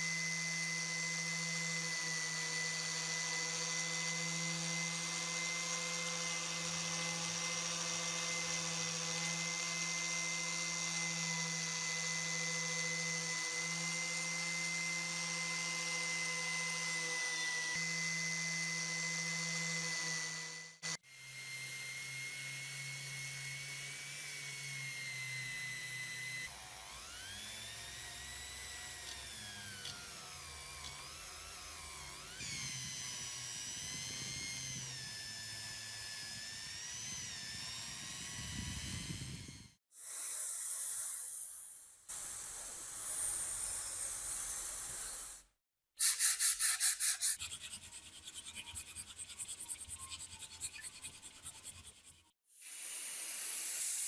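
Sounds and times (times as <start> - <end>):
power tool motor whining on metal: 0.0 - 39.8
fast scraping strokes: 46.0 - 52.4.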